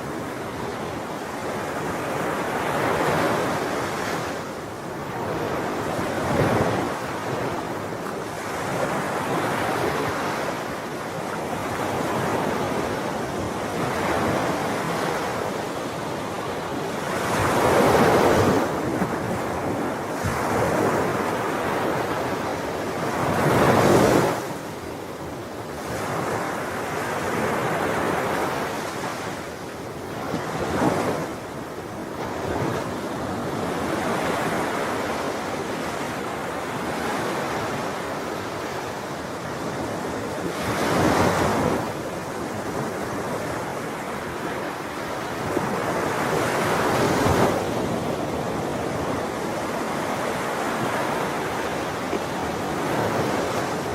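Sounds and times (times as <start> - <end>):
sea waves breaking on shore: 0.0 - 53.9.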